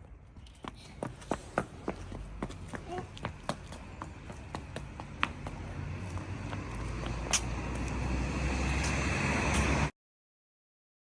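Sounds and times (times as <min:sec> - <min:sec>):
vehicle engine and road rumble: 0:00.0 - 0:09.9.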